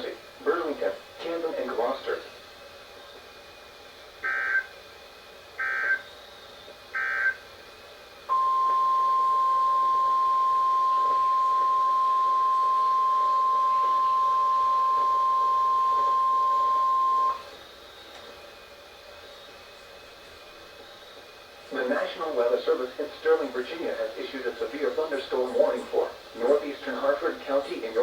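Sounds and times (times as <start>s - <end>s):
warning alarm tone: 4.2s - 4.7s, 5.6s - 6.0s, 7.0s - 7.4s, 8.3s - 17.5s.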